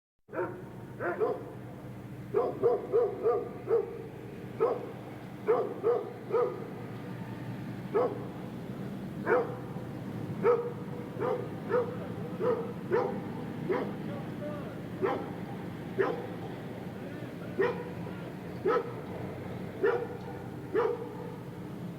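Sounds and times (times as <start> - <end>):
distant dog barking: 0.3 - 1.6, 2.3 - 6.9, 7.9 - 8.5, 9.2 - 9.8, 10.4 - 14.1, 14.9 - 16.6, 17.5 - 21.6
low background hum: 0.3 - 21.9.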